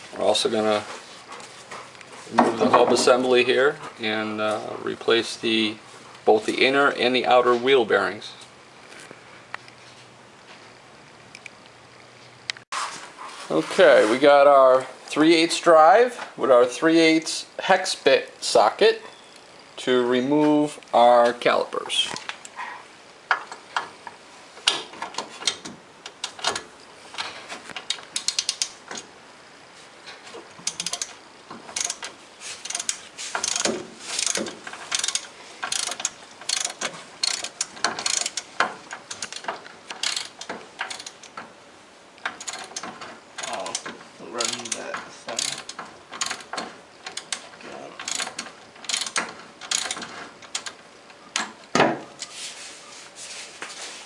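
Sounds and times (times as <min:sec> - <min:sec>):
ratchet clicking: 0:24.7 - 0:29.1, 0:30.6 - 0:41.4, 0:42.2 - 0:51.6.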